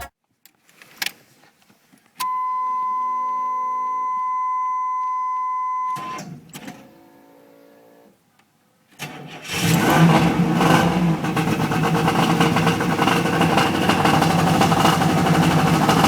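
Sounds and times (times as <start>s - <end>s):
brief rustle: 0.3s - 2.2s
high electronic beep: 2.2s - 6.2s.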